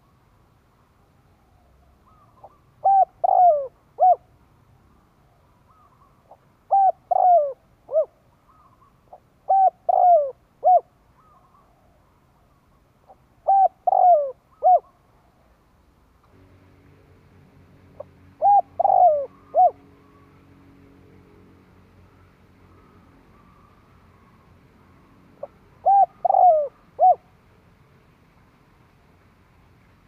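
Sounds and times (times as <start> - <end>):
dove cooing: 2.0 - 4.3, 5.7 - 11.8, 13.1 - 15.0, 18.0 - 20.4, 25.4 - 27.3.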